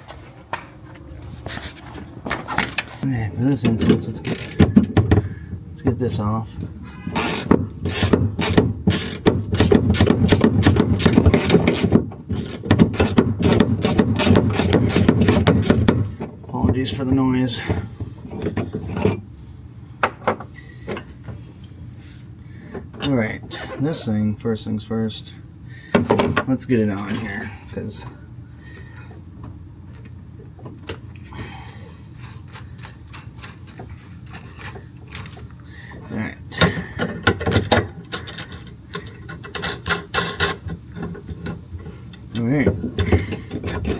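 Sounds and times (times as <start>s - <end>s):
steady low hum: 0.0s - 43.9s
ratchet wrench clicking: 4.2s - 4.6s, 7.2s - 15.8s.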